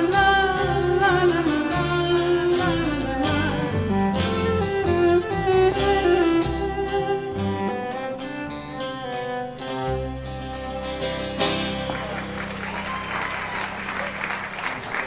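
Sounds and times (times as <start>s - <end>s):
bowed viola melody: 0.0s - 12.0s
strummed lute: 0.0s - 12.5s
bass: 0.0s - 15.0s.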